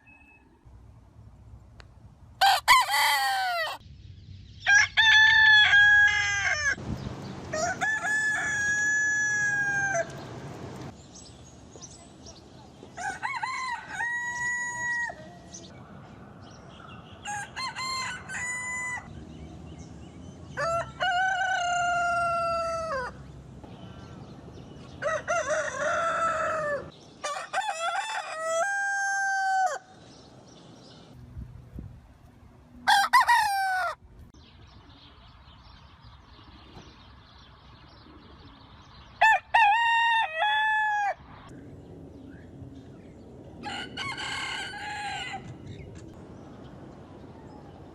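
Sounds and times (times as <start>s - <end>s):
roosters crowing: 2.4s - 3.8s, 4.6s - 10.9s, 12.9s - 15.7s, 17.0s - 19.1s, 20.5s - 23.3s, 24.8s - 30.0s, 32.8s - 34.0s, 39.2s - 41.5s, 43.6s - 45.8s.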